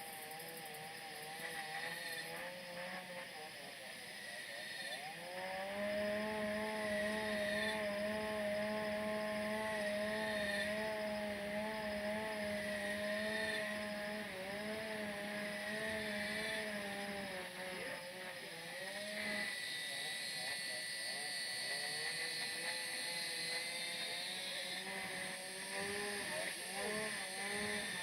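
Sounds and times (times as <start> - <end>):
small engine running: 0.0 - 28.0.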